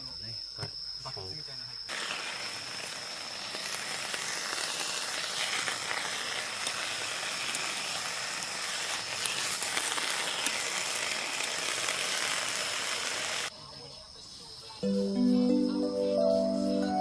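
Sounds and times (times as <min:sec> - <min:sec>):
crickets trilling: 0:00.0 - 0:14.8
wood fire hissing and crackling: 0:01.8 - 0:13.5.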